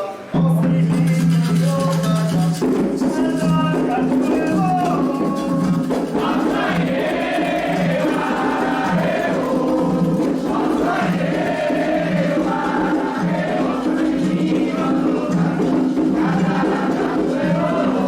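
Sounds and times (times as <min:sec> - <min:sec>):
drums playing steady rhythm: 0:00.0 - 0:18.0
group of voices chanting: 0:06.1 - 0:18.0.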